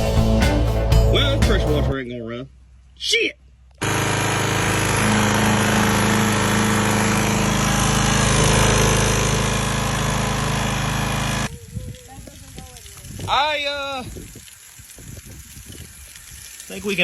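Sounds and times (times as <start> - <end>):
pressure washer engine running: 3.8 - 11.5.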